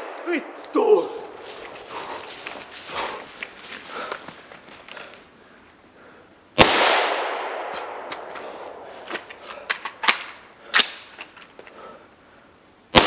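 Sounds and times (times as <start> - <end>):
rifle shot with echo: 6.6 - 8.9.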